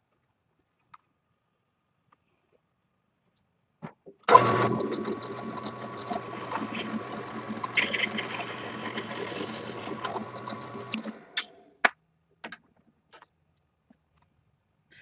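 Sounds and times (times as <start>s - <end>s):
power tool motor humming: 4.3s - 11.2s.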